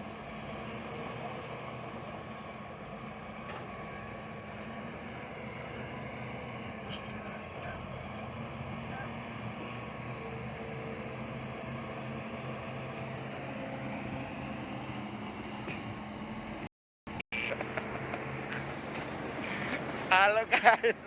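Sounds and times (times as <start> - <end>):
bulldozer diesel engine droning: 0.0 - 21.0.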